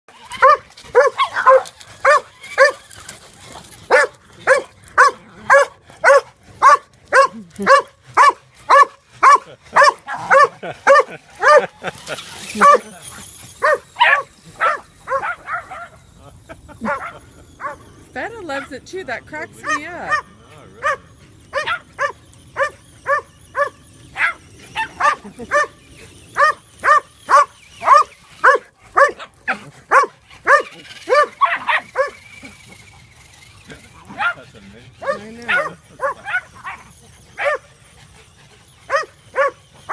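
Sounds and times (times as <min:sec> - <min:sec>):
dog barking: 0:00.3 - 0:02.8, 0:03.9 - 0:11.7, 0:19.6 - 0:24.4, 0:26.4 - 0:29.3, 0:29.9 - 0:32.2, 0:35.0 - 0:36.8, 0:37.4 - 0:37.6, 0:38.9 - 0:39.6.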